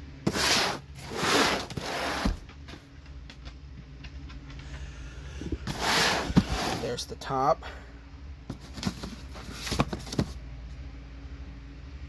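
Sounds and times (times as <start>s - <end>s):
low electrical hum: 0.0s - 12.0s
cardboard box scraping and rustling: 0.3s - 2.5s, 5.6s - 7.0s, 8.5s - 10.4s.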